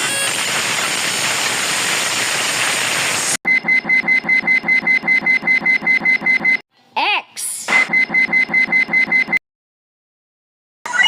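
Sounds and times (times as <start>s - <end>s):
rapid electronic beeping: 3.5s - 6.6s, 7.8s - 9.4s.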